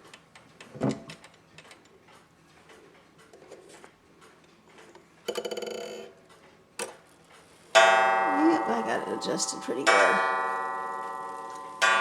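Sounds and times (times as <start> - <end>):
clock ticking faintly: 1.2 - 3.4
clock gong ringing: 7.7 - 12.0.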